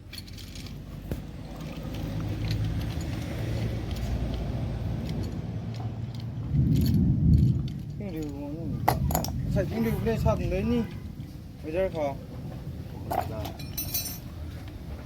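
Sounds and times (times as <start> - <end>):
metallic tool clinks: 13.2 - 14.3.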